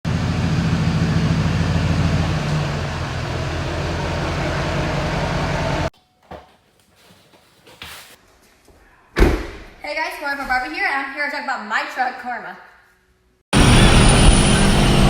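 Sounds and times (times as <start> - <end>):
engine humming: 0.1 - 5.9, 13.6 - 15.0.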